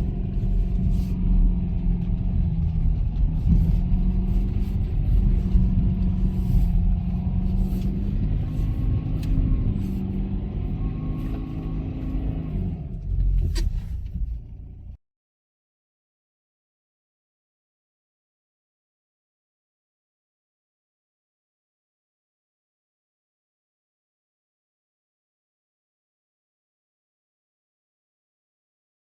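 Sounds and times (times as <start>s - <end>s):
car engine under load: 0.0s - 15.0s.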